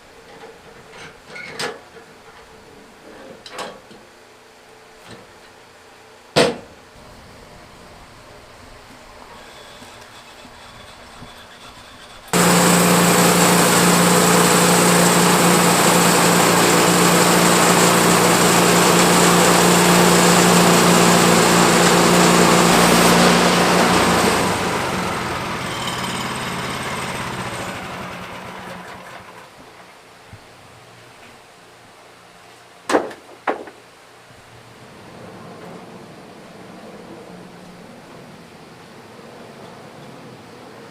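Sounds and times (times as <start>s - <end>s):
band sawmill engine and blade: 9.0s - 29.6s.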